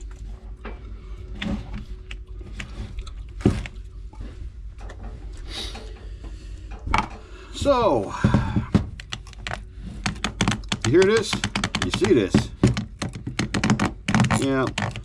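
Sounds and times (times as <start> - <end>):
low steady hum: 0.0 - 15.0
scattered clicks and knocks: 8.2 - 15.0.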